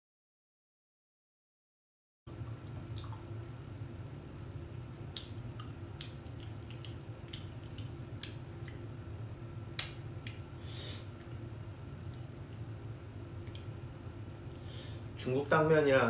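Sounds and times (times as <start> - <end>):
steady low hum: 2.3 - 16.0
chewing smacks and clicks: 5.1 - 8.9, 9.8 - 10.4, 11.2 - 12.6, 13.4 - 14.4.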